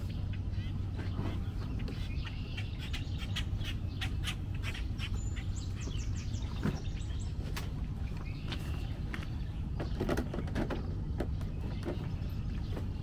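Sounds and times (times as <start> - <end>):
waterfowl squawking and chirping: 0.0 - 8.9
steady low rumble: 0.0 - 13.0.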